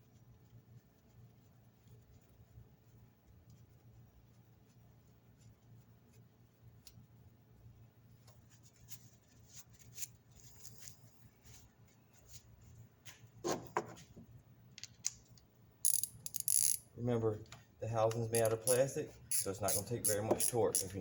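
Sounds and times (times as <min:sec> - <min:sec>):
hand tools clicking and scraping: 0:15.9 - 0:16.8, 0:18.0 - 0:21.0.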